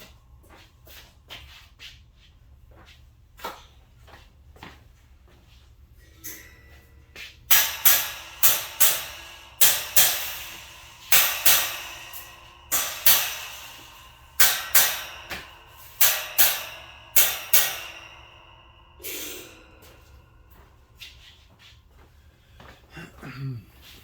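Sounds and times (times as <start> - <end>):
metal wire shelf clanging: 6.0 - 20.6.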